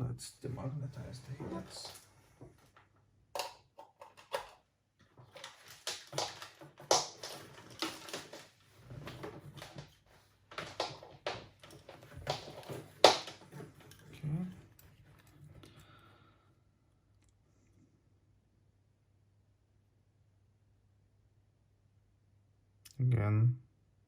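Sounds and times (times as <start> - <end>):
tools handled on workbench: 3.4 - 15.8.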